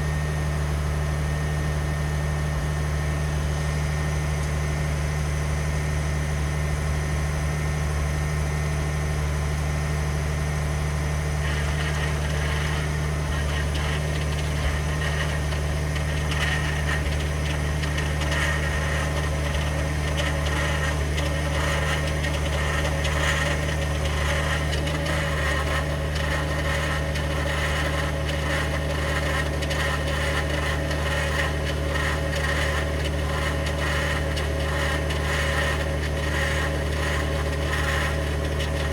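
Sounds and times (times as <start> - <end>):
rough grinding noise: 11.2 - 38.9.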